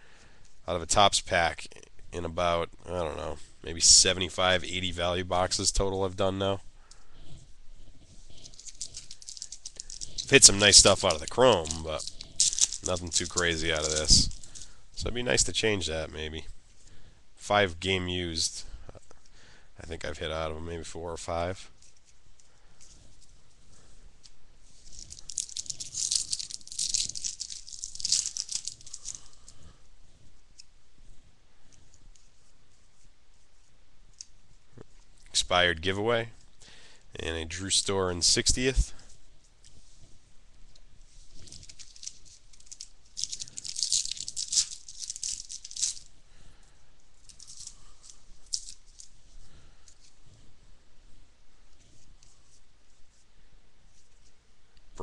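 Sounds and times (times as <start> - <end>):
card pack crinkling and tearing: 8.4 - 15.4, 24.8 - 29.5, 41.4 - 46.1.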